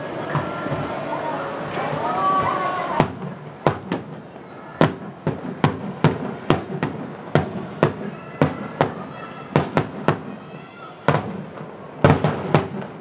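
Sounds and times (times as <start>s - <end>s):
fireworks shells bursting: 0.0s - 10.3s.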